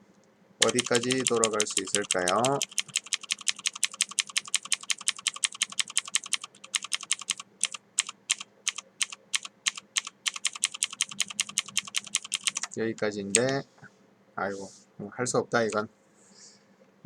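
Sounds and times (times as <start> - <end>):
computer mouse clicking: 0.6 - 13.6.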